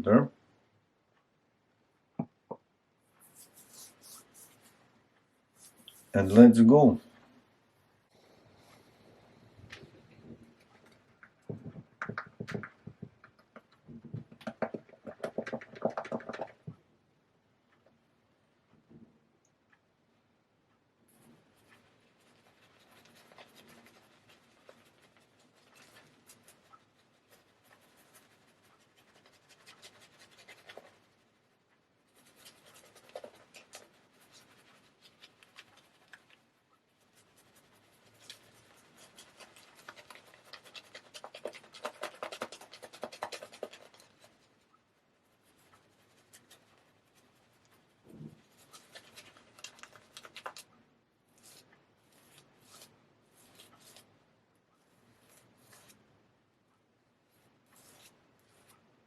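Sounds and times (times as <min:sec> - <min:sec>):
razor scraping beard stubble: 0:37.0 - 0:44.3.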